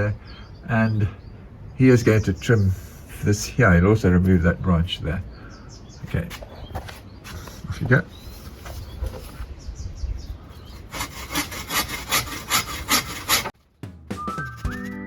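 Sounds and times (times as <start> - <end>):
hand saw cutting branch: 10.8 - 13.6
music: 13.8 - 15.0.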